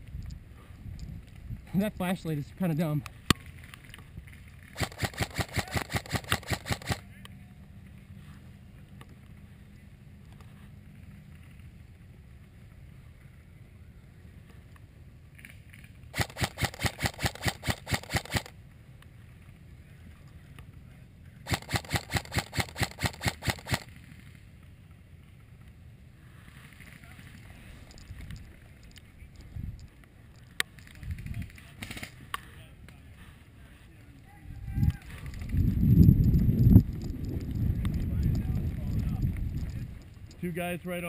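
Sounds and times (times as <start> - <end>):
airsoft gun shots: 4.8 - 7.0, 16.1 - 18.5, 21.5 - 23.9.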